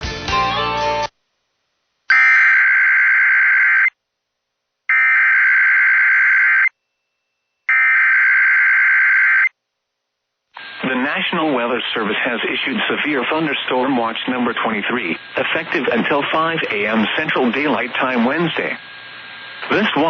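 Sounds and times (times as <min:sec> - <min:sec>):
rapid two-tone digital data bursts: 0:10.7 - 0:20.0.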